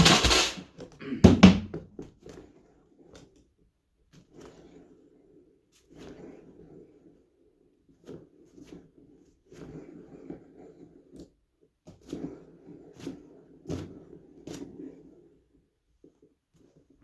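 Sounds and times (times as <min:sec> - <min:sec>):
rustling and scraping: 0:00.0 - 0:00.7.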